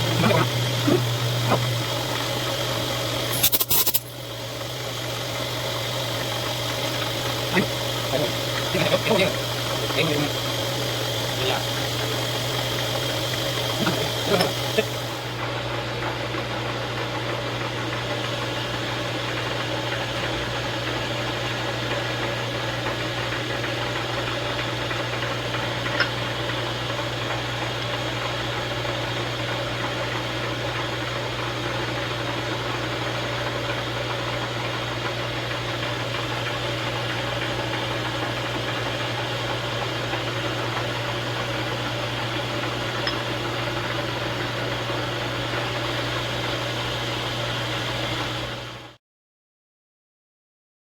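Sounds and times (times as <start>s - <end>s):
electric motor humming: 0.0s - 15.6s.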